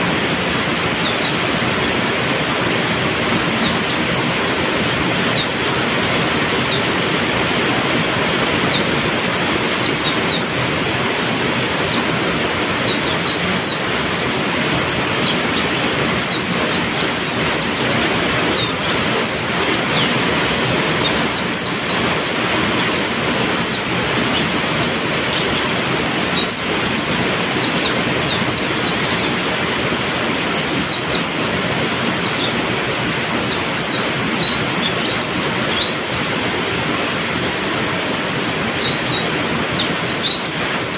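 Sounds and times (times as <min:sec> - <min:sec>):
heavy rain: 0:00.0 - 0:40.9
bird chirping high notes: 0:00.8 - 0:01.4, 0:12.8 - 0:20.1, 0:32.1 - 0:32.6, 0:33.4 - 0:36.7, 0:38.4 - 0:40.9.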